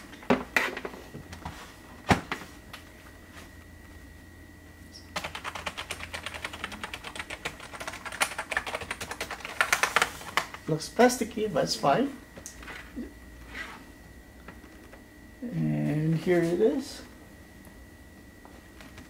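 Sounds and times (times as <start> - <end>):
keyboard keys clicking: 5.2 - 10.1.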